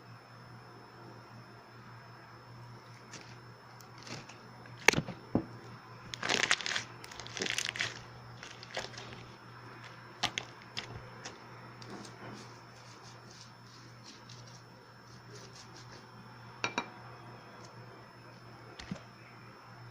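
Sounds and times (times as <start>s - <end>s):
faint steady hum: 0.0s - 19.9s
slime crackling: 3.1s - 5.0s, 6.1s - 11.4s.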